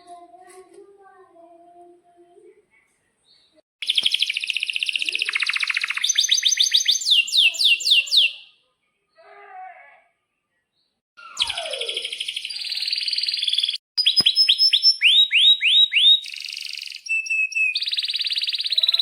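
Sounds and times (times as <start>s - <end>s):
canary singing a trill: 3.8s - 8.6s, 11.2s - 19.0s.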